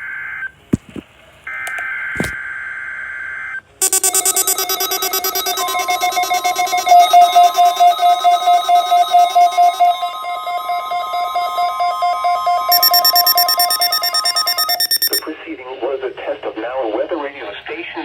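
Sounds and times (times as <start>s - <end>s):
pulsing trilling electronic tones: 3.8s - 15.3s
steady alarm tone: 3.8s - 15.3s.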